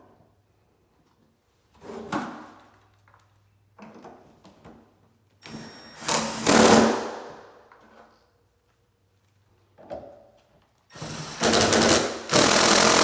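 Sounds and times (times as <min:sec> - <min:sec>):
cordless drill driving screws: 0:05.5 - 0:07.0, 0:10.9 - 0:13.0.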